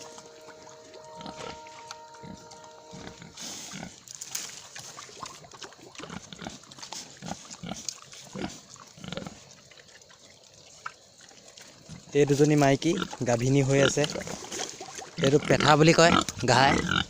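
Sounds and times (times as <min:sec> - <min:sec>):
pigs grunting: 0:00.0 - 0:09.6, 0:11.6 - 0:17.0.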